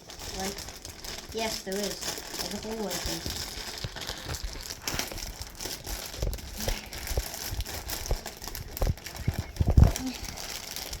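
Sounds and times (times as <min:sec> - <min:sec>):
plastic wrapping crinkling: 0:00.0 - 0:11.0.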